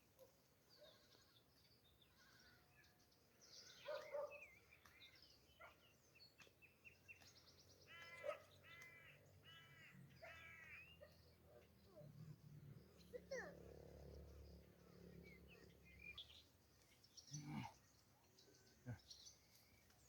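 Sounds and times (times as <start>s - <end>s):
small birds chirping: 0.0s - 20.0s
crow cawing: 7.9s - 10.9s.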